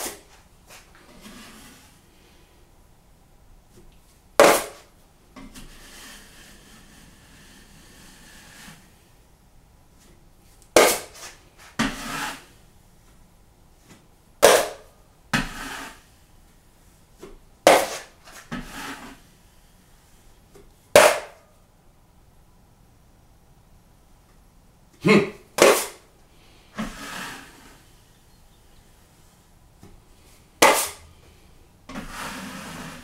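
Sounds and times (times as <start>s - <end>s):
knife scraping joint compound: 0.0s - 2.0s, 4.4s - 9.0s, 10.8s - 12.6s, 13.8s - 16.2s, 17.2s - 19.5s, 25.0s - 26.0s, 26.7s - 29.0s, 29.8s - 31.1s, 31.9s - 33.0s.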